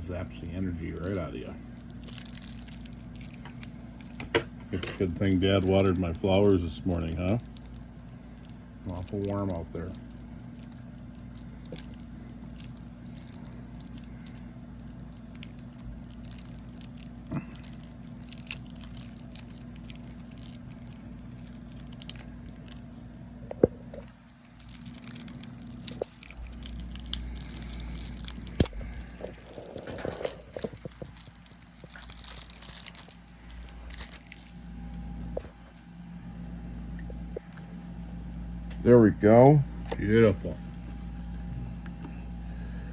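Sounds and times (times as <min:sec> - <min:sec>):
plastic wrapping crinkling: 0:00.0 - 0:35.9
steady low hum: 0:00.0 - 0:42.9.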